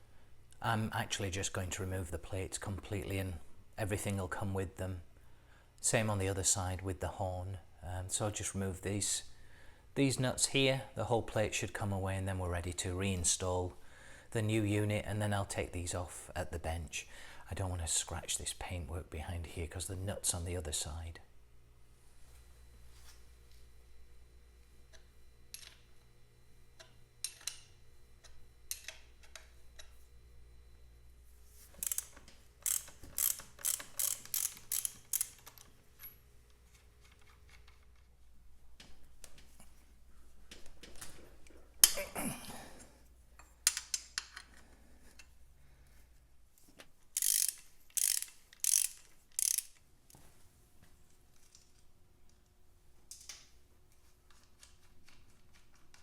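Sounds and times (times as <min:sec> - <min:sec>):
ratchet wrench clicking: 0:31.8 - 0:35.6, 0:47.2 - 0:49.8.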